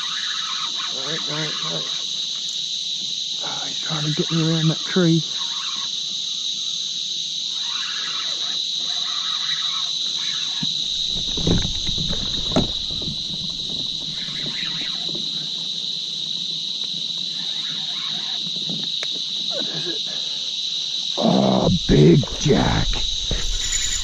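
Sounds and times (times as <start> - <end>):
insects droning: 0.0 - 24.0
dull thumps: 10.6 - 15.0.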